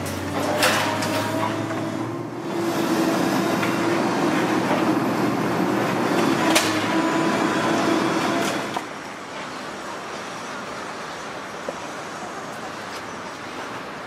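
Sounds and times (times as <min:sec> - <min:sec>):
heavy demolition machinery: 0:00.0 - 0:10.4.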